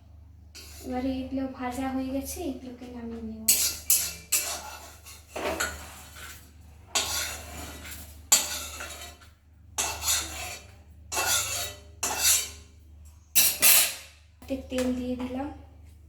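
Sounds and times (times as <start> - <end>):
spatula scraping a pan: 0.6 - 1.0, 3.5 - 14.2.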